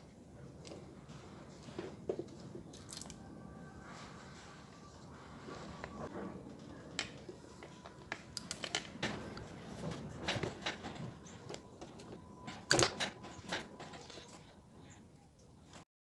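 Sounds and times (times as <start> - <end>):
plastic parts clicking and knocking: 7.0 - 14.3.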